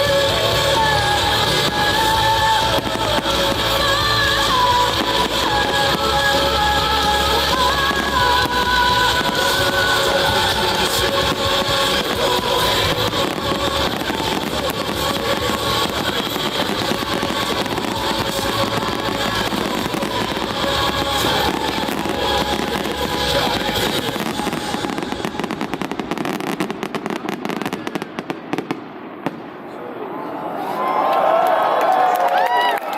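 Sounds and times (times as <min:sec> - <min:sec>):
music playing: 0:00.0 - 0:26.6
fireworks crackling and banging: 0:00.0 - 0:29.8.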